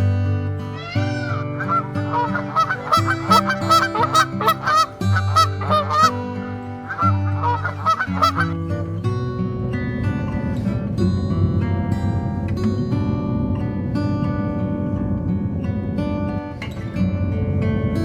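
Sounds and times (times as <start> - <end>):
waterfowl honking: 0.3 - 8.6.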